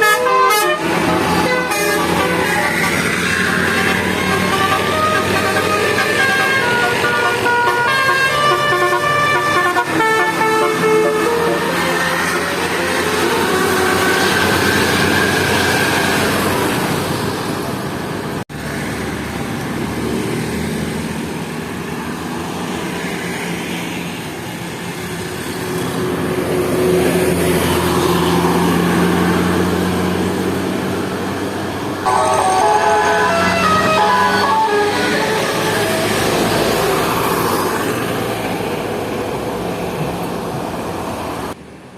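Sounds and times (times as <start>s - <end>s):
multi-tone horn playing a tune: 0.0s - 3.0s, 3.7s - 14.6s, 32.1s - 36.4s
bus engines working uphill: 0.0s - 41.9s
road traffic: 0.0s - 41.9s.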